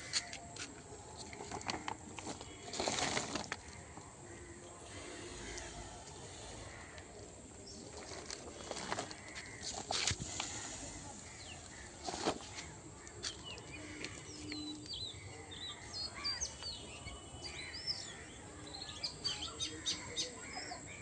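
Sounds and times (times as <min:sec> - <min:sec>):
small birds chirping: 0:04.3 - 0:21.0.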